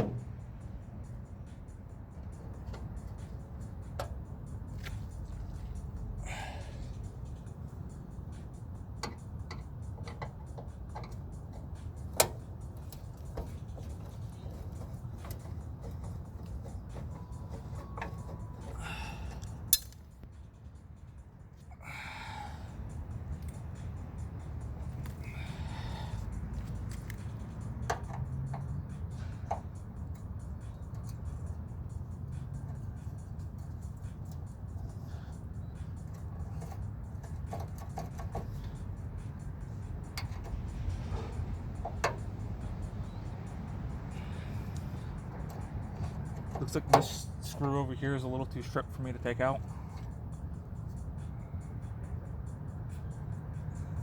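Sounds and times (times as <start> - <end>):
faint background music: 0.0 - 54.0
hand tools clicking on metal: 9.0 - 20.2, 26.2 - 31.6, 36.0 - 38.9, 44.7 - 47.9.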